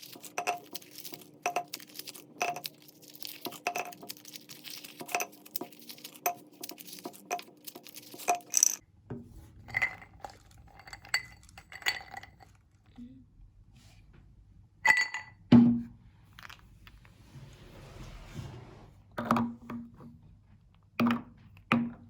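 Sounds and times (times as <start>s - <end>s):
grinder crunching candy: 0.0s - 8.8s.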